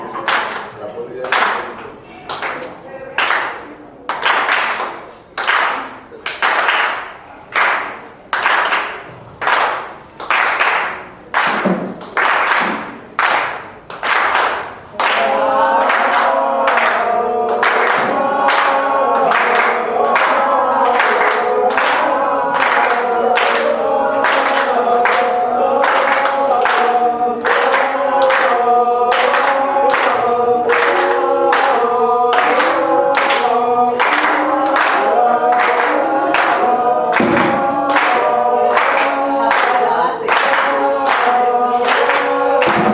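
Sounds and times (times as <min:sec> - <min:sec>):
rhythmic hand clapping: 0:00.0 - 0:42.9
group of voices singing: 0:06.4 - 0:42.9.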